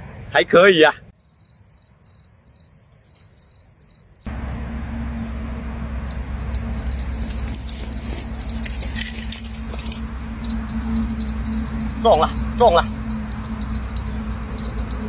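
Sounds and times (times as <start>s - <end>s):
cricket chirping: 0.0s - 0.4s, 1.1s - 15.0s
thin high insect-like tone: 1.2s - 4.7s, 5.8s - 15.0s
low rumbling hum: 4.3s - 15.0s.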